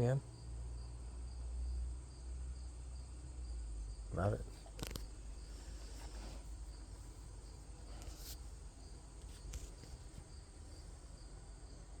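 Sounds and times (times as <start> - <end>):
cricket chirping: 0.0 - 12.0.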